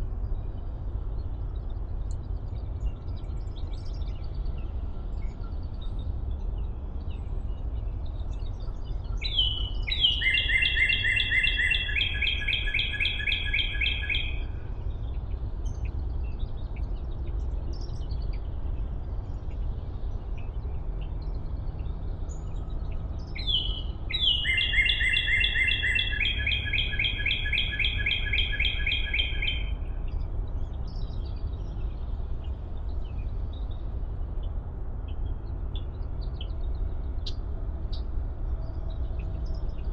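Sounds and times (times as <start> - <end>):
songbird trilling: 9.2 - 14.4, 23.3 - 29.8.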